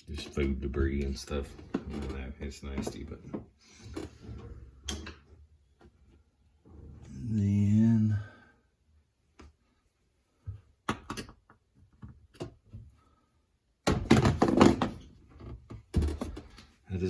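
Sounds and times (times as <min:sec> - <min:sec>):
plastic and metal parts knocking: 0:13.9 - 0:16.7.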